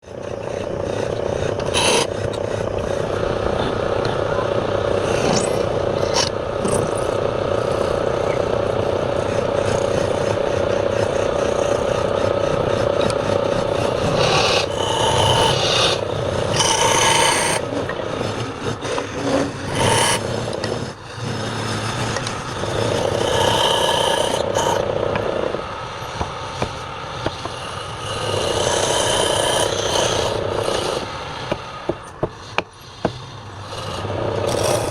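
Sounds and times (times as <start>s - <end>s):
turning tool scraping wood: 0.0s - 3.7s, 9.6s - 25.6s, 26.2s - 33.2s
wood lathe humming: 0.0s - 34.9s
tool squealing against wood: 1.6s - 2.4s, 5.1s - 7.0s, 14.0s - 17.6s, 18.9s - 20.9s.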